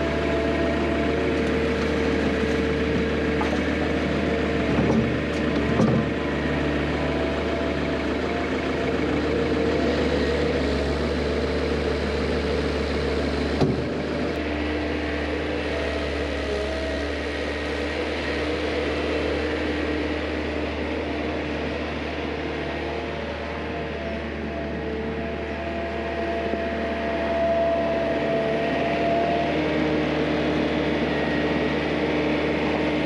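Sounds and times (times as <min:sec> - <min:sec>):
vehicle engine running: 0:00.0 - 0:33.0.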